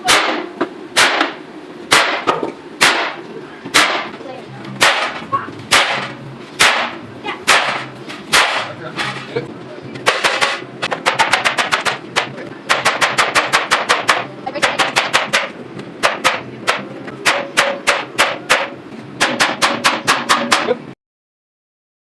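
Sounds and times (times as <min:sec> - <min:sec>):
rapid gunfire: 0:04.8 - 0:08.7, 0:12.7 - 0:20.7.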